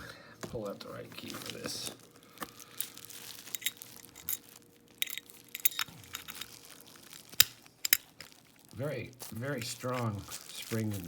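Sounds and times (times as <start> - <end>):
metal keys jingling: 3.5 - 6.6.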